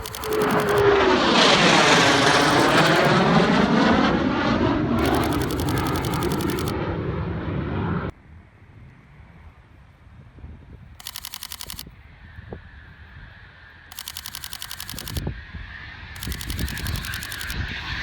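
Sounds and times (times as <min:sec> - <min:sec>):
camera shutter burst: 0:00.0 - 0:01.2, 0:02.3 - 0:03.2, 0:05.0 - 0:06.8, 0:11.0 - 0:11.9, 0:13.9 - 0:15.2, 0:16.2 - 0:17.6
jet passing close by: 0:00.0 - 0:08.2, 0:12.0 - 0:18.0.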